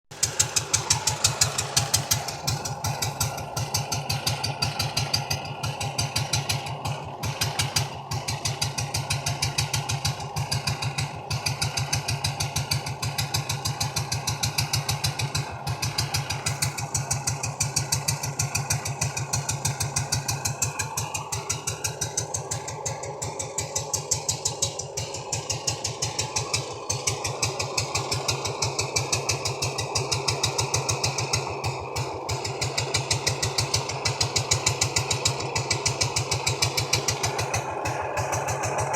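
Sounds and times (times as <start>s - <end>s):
engine idling chugging: 0.1s - 38.9s.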